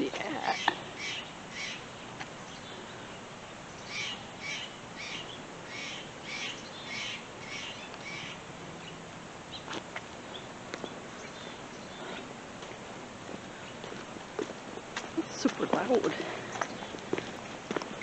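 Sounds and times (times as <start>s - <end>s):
harsh corvid calls: 3.8s - 9.0s.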